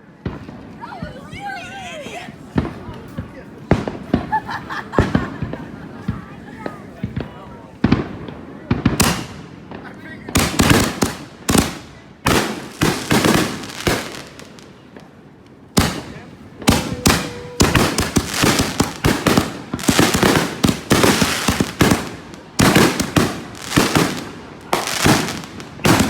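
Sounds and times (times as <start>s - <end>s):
fireworks bangs and crackling: 0.0s - 26.0s.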